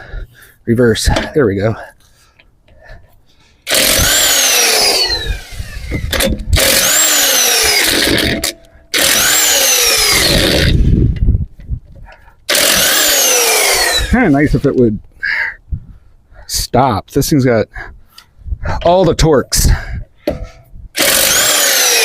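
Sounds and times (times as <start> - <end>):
impact wrench hammering: 5.9 - 10.7, 20.2 - 22.0.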